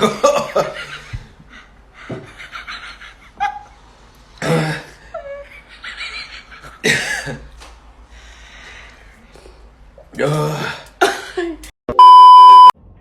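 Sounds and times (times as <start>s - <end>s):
laughter and giggling: 0.0s - 3.8s, 5.1s - 6.8s.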